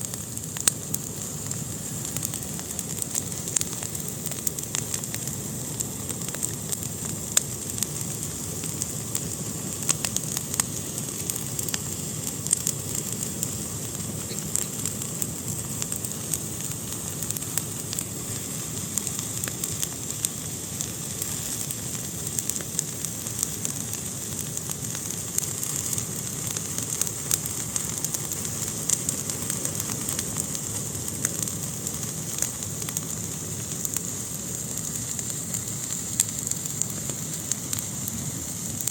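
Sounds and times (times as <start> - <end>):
constant hiss of fire: 0.0 - 38.9
fire crackling: 0.0 - 38.9.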